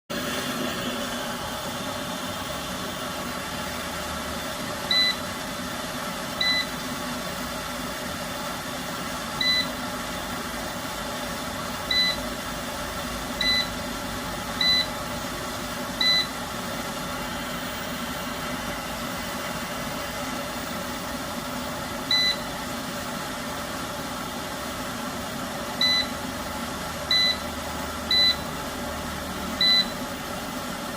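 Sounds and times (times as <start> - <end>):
electrical hum: 0.1 - 30.9
short electronic beeps: 4.9 - 5.2, 6.4 - 6.7, 9.4 - 9.7, 11.9 - 12.2, 13.4 - 13.7, 14.6 - 14.9, 16.0 - 16.4, 22.1 - 22.5, 25.8 - 26.1, 27.1 - 27.4, 28.1 - 28.4, 29.6 - 30.0.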